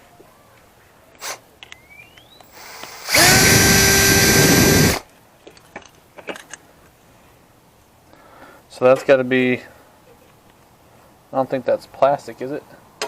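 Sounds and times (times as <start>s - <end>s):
power drill spinning: 2.4s - 5.0s
light clicks of parts handled: 5.0s - 7.0s.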